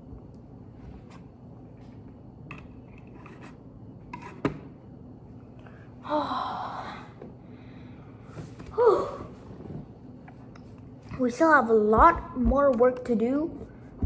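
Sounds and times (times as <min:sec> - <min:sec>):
breathy sigh: 0:08.7 - 0:09.4.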